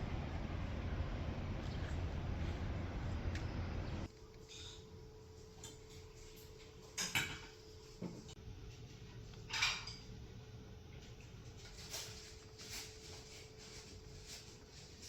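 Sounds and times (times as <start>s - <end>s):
steady low hum: 0.0s - 15.0s
kitchenware clinking: 6.8s - 7.6s, 9.5s - 10.2s.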